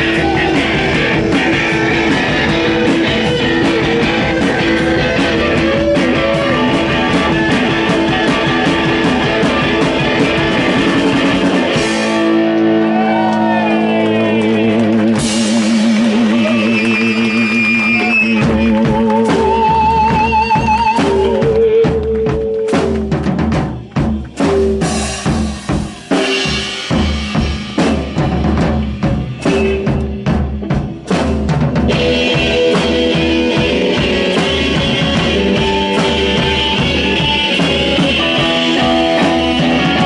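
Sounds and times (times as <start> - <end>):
sliding guitar tones: 0.0 - 27.4, 29.1 - 40.0
drums: 0.0 - 40.0
electric guitars: 0.0 - 40.0
low bass: 0.0 - 40.0.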